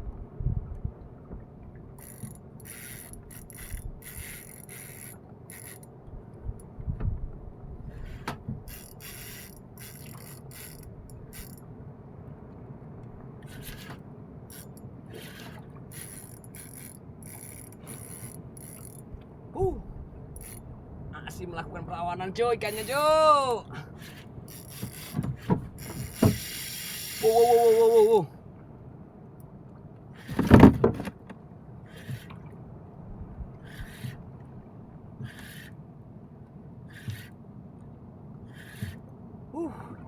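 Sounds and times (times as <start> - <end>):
low rumble: 0.0 - 1.7
fishing reel ratcheting and whirring: 2.0 - 6.0, 8.7 - 11.6, 14.5 - 14.8, 15.9 - 19.0, 20.4 - 20.6, 22.7 - 23.0, 24.5 - 25.2, 25.8 - 27.8.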